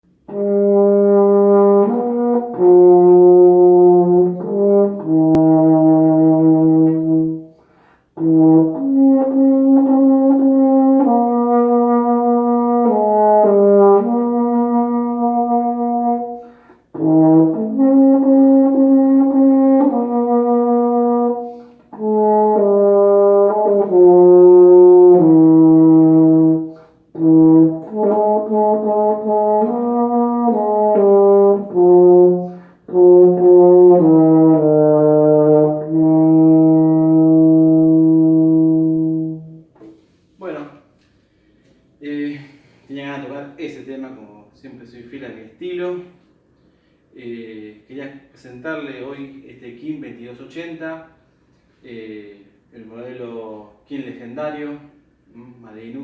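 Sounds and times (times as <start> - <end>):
euphonium slow melody: 0.2 - 7.6, 8.2 - 39.8.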